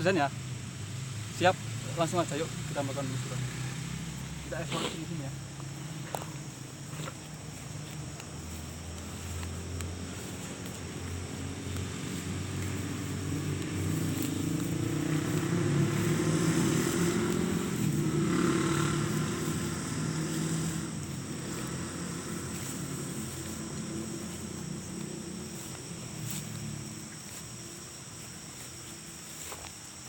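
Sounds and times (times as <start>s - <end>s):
vehicle engine passing by: 0.0s - 29.6s.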